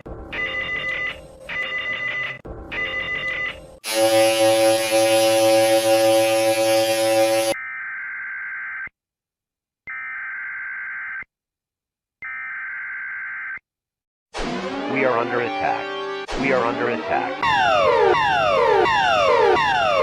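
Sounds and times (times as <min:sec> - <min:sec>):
harsh multi-tone alarm: 0:00.4 - 0:08.9, 0:14.4 - 0:16.6, 0:17.3 - 0:20.0
phone-ring-like tone: 0:00.4 - 0:08.9
screeching data bursts: 0:03.9 - 0:07.6.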